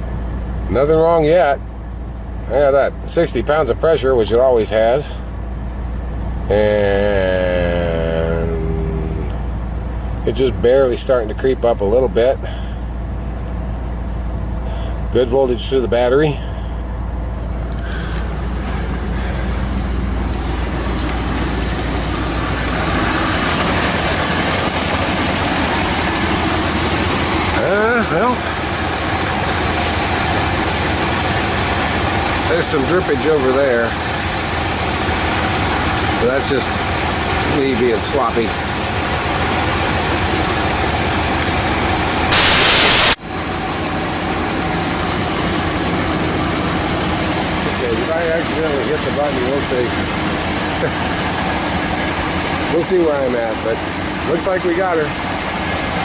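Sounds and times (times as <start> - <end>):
engine idling: 0.0 - 56.0
loud static hiss: 41.4 - 43.2.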